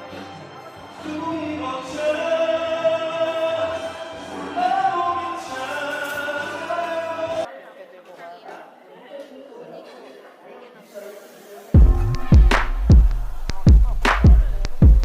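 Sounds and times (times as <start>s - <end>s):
musical accompaniment: 0.0s - 7.4s, 11.8s - 15.0s
person singing long held notes: 0.0s - 7.5s.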